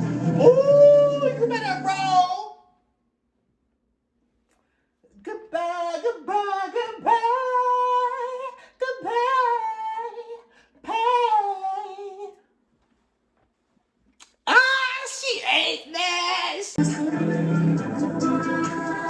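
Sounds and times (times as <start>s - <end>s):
high voice singing unaccompanied: 0.3s - 2.6s, 5.2s - 12.4s, 14.5s - 16.8s.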